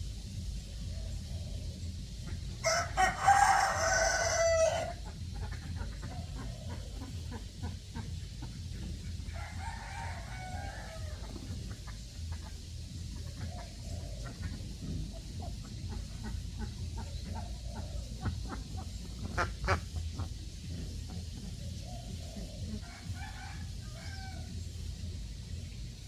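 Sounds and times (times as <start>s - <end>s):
rooster crowing: 2.6s - 5.0s, 9.3s - 11.5s, 22.8s - 24.6s.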